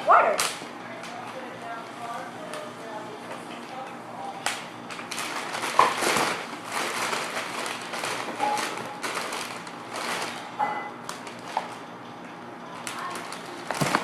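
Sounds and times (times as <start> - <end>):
plastic bag rustling: 13.6 - 14.0
light knocks: 13.7 - 14.0.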